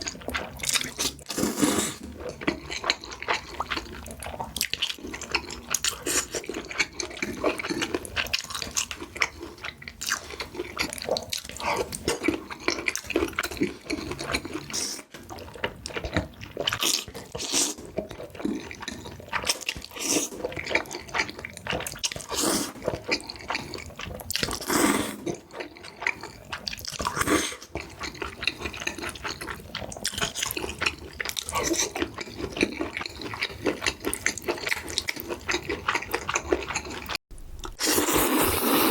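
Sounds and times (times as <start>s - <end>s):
wet chewing: 0.0s - 38.9s
noodle slurps: 37.6s - 38.9s.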